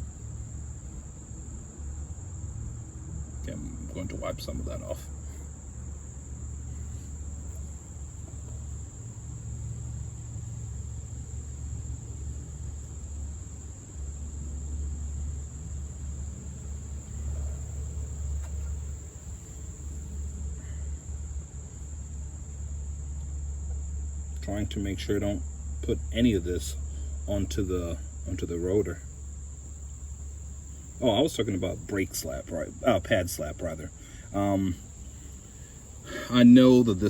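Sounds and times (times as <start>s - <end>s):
high-pitched insect trill: 0.0s - 37.0s
low steady rumble: 0.0s - 37.0s.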